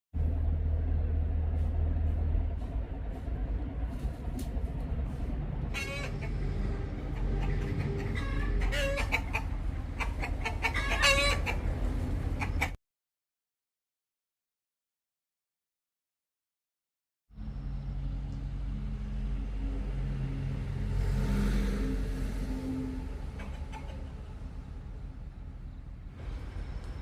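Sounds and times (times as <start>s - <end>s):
steady low rumble: 0.2s - 12.7s, 17.3s - 27.0s
chickens clucking and calling: 5.6s - 12.8s, 23.2s - 24.8s.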